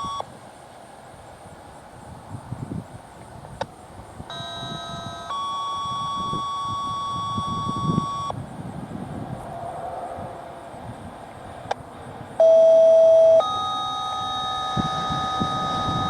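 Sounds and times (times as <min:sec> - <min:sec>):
two-tone paging tones: 0:04.3 - 0:08.4, 0:12.4 - 0:16.0.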